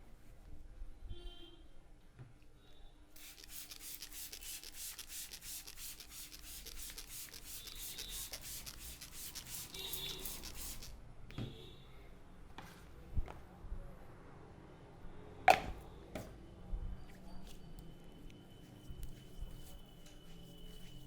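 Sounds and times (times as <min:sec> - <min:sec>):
hands rubbing through hair: 0:03.2 - 0:10.9.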